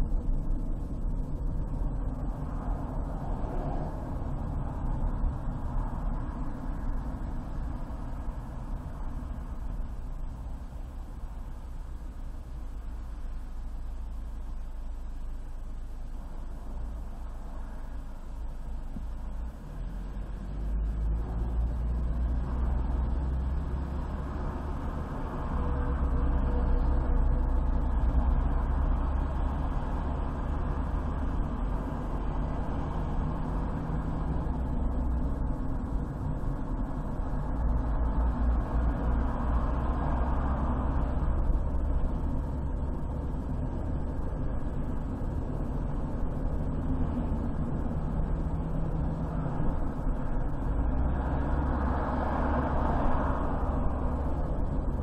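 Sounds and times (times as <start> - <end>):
car engine and tyre road noise: 0.0 - 55.0.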